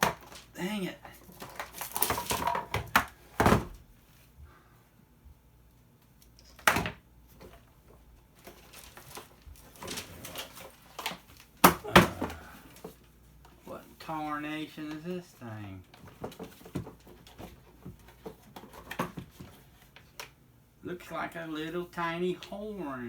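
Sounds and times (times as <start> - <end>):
plastic toy parts clattering: 1.1 - 3.1, 8.4 - 12.9.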